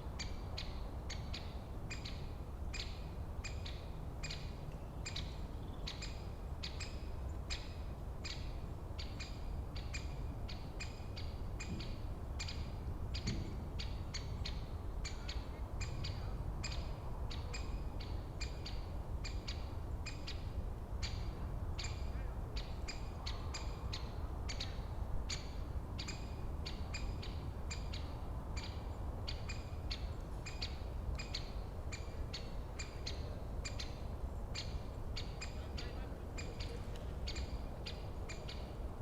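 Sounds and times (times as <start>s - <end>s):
bird calling: 21.0s - 38.8s.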